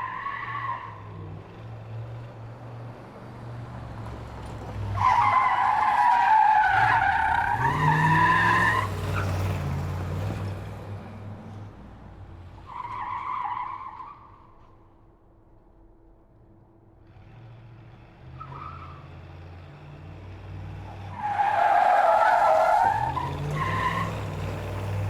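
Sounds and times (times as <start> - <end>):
car engine rumbling and revving: 0.1 - 14.7, 17.0 - 25.0.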